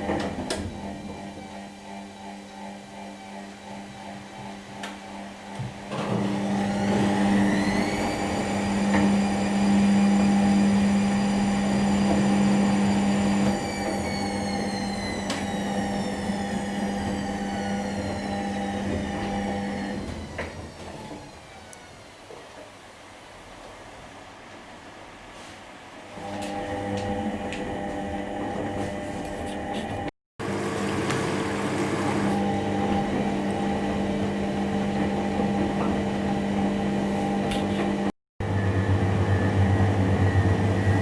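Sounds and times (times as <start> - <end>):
washing machine motor whine: 0.0 - 22.4, 26.1 - 41.0.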